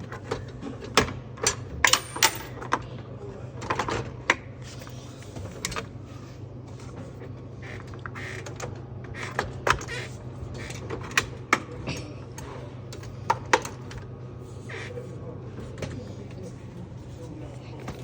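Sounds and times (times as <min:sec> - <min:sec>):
steady low hum: 0:00.0 - 0:18.0
coin mechanism parts clicking: 0:01.4 - 0:02.8.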